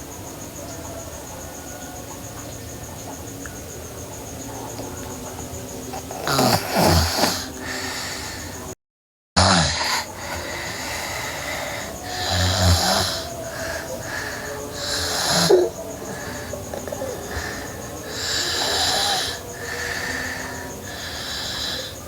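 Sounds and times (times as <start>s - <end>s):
girl snoring: 5.9s - 8.7s, 9.4s - 22.0s.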